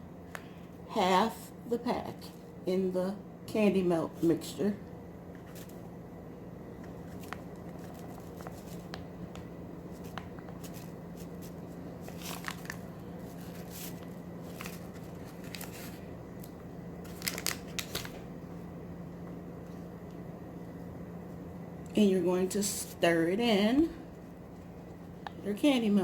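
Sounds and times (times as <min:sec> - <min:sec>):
steady low hum: 0:00.0 - 0:26.0
packet crinkling and tearing: 0:07.0 - 0:09.0, 0:10.0 - 0:18.3.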